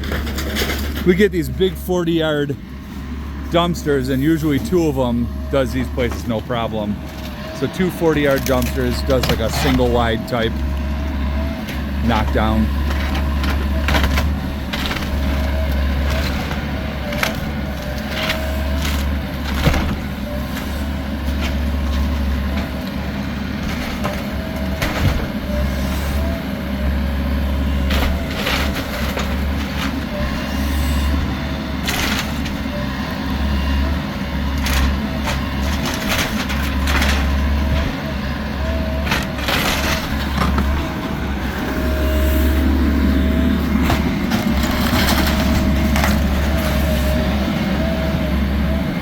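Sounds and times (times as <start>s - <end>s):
excavator engine running: 0.0s - 49.0s
structure cracking and crashing: 3.5s - 20.5s, 43.2s - 47.2s.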